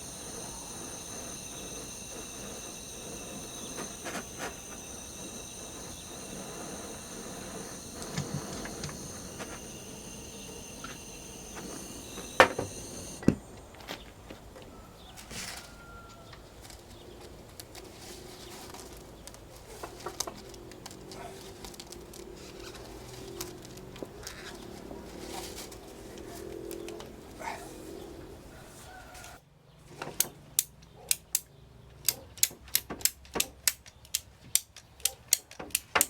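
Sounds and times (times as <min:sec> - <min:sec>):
insects chirring: 0:00.0 - 0:15.0.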